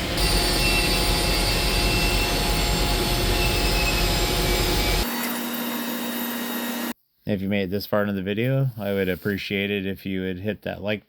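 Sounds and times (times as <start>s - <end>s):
machinery rumbling: 0.0s - 5.0s.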